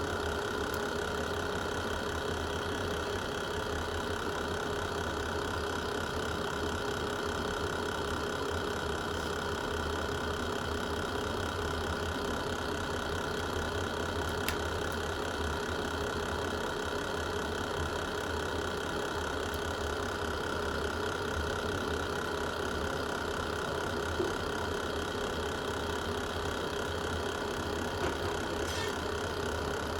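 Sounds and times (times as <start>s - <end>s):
fire crackle: 0.1s - 4.8s, 11.6s - 16.2s, 16.8s - 21.6s.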